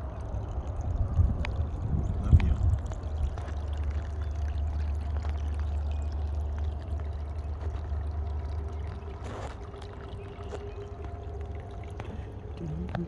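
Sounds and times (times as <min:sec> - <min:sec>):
low rumble: 0:00.0 - 0:13.0.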